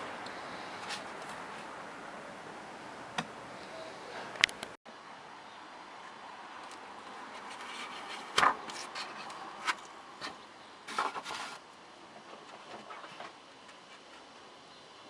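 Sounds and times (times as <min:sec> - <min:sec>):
handling scrapes and knocks: 0:07.1 - 0:14.3.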